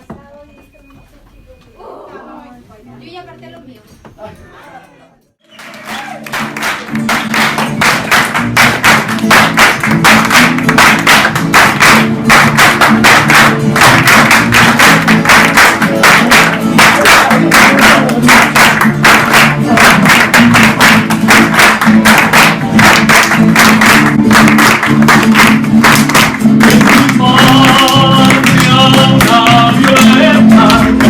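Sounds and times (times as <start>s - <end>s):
strummed guitar music: 6.4s - 31.0s.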